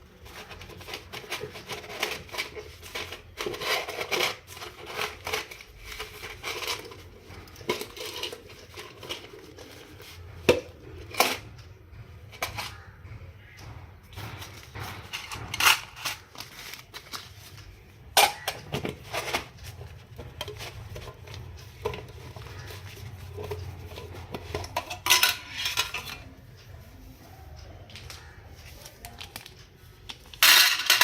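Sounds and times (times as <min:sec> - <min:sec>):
metal clinks and scrapes: 0:00.2 - 0:11.6, 0:14.2 - 0:17.6, 0:18.2 - 0:26.7, 0:30.3 - 0:31.0
metal knocks: 0:10.2 - 0:16.4.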